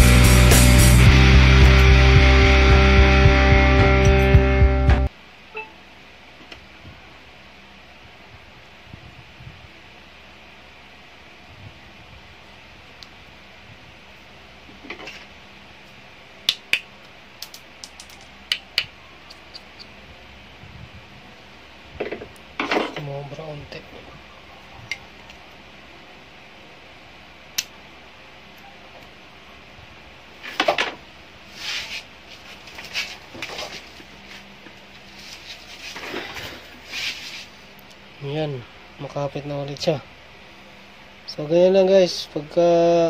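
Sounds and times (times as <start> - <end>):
plastic scraping and rustling: 31.6 - 37.5.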